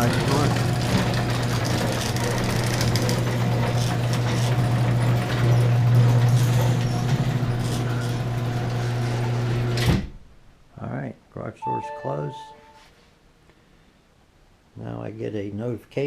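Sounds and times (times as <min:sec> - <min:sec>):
garage door opener motor hum: 0:00.0 - 0:10.0.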